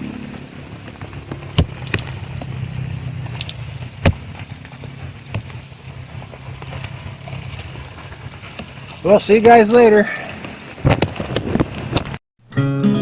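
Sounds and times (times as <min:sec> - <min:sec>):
low hum: 0:00.0 - 0:09.0
campfire crackling and popping: 0:00.0 - 0:12.2.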